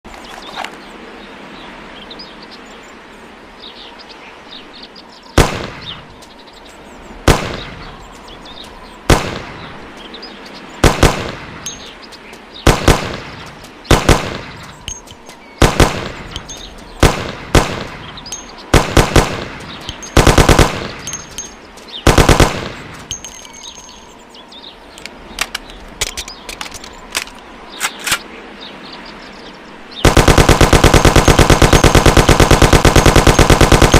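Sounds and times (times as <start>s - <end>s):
submachine gun firing: 5.4s - 5.9s, 7.3s - 7.7s, 9.1s - 9.5s, 10.8s - 11.4s, 12.7s - 14.6s, 15.6s - 16.4s, 17.0s - 18.1s, 18.7s - 21.4s, 22.1s - 23.0s, 30.0s - 33.9s.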